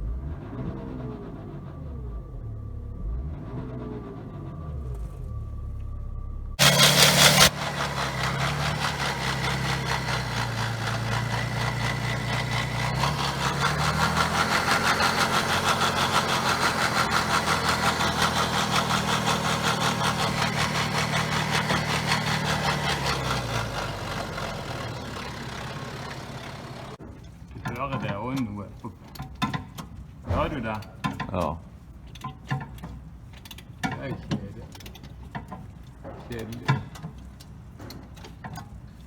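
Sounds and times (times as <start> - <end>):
diesel engine running: 0.0 - 27.0
timing chain noise: 6.6 - 26.9.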